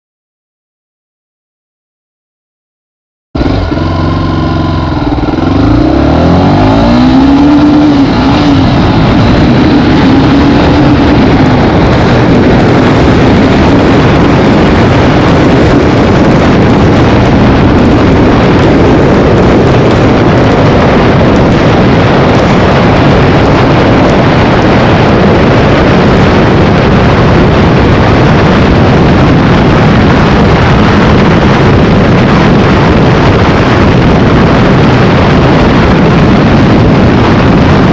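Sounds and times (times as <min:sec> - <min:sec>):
motorcycle engine accelerating: 0:03.4 - 0:37.9
rush of wind: 0:03.4 - 0:37.9.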